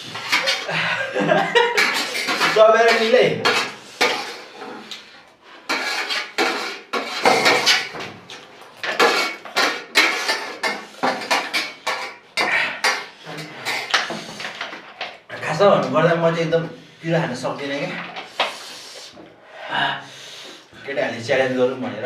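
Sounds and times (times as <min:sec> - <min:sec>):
spoons scraping and clinking on plates: 0:00.0 - 0:15.3.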